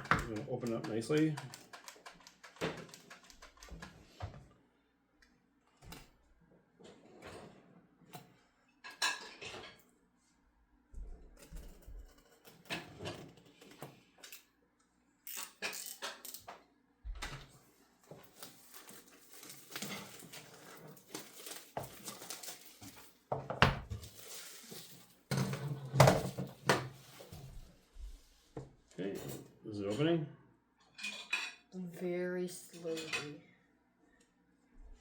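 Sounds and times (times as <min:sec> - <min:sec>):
cellophane crinkling: 0:18.3 - 0:23.2, 0:24.0 - 0:25.2.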